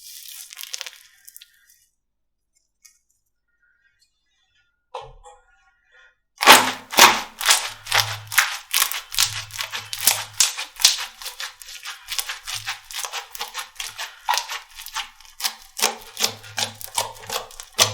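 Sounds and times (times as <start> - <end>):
slime squeezed by hand: 0.0 - 1.8, 6.4 - 17.9.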